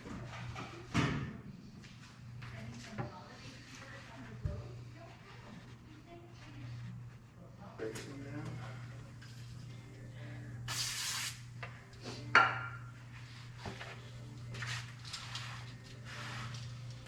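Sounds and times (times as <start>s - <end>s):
steady low hum: 0.0s - 10.8s, 11.4s - 17.0s
short hiss: 10.7s - 11.4s.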